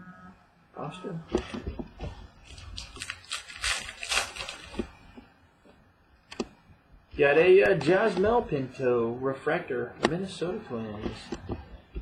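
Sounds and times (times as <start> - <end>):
cards and wrappers rustling: 1.4 - 5.2.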